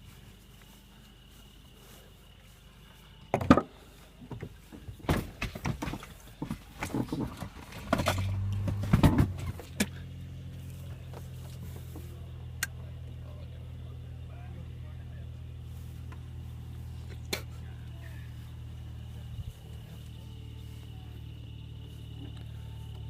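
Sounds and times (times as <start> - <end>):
knocks and thumps: 4.3 - 9.9
car engine starting and idling: 4.4 - 23.0.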